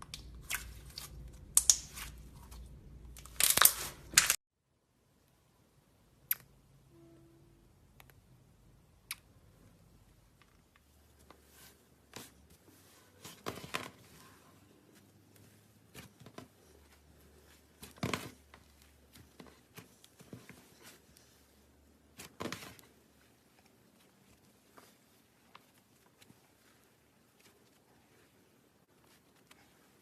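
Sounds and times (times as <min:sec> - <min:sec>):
slime clicking and crackling: 0:00.0 - 0:02.2.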